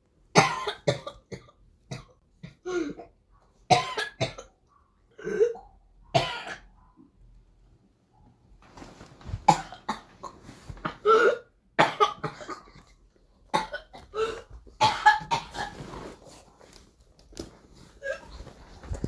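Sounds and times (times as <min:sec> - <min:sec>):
child coughing fit: 0:00.4 - 0:03.1, 0:03.7 - 0:04.6, 0:06.2 - 0:06.7, 0:09.5 - 0:12.9, 0:13.5 - 0:15.8.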